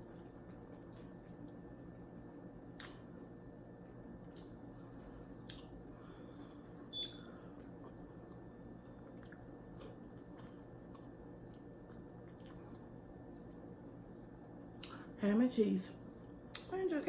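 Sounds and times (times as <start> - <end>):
steady low hum: 0.0 - 17.0
person chewing: 9.0 - 12.8.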